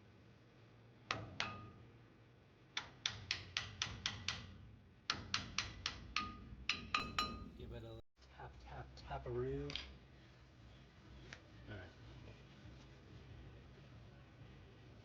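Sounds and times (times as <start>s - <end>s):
hammer tapping on metal: 5.1s - 7.9s.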